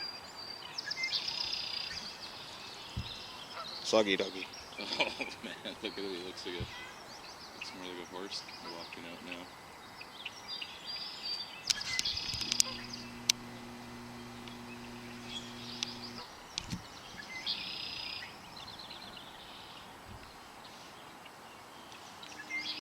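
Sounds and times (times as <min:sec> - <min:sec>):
small birds chirping: 0:00.0 - 0:22.8
sharp clicks: 0:11.7 - 0:16.8
low steady hum: 0:12.2 - 0:16.8.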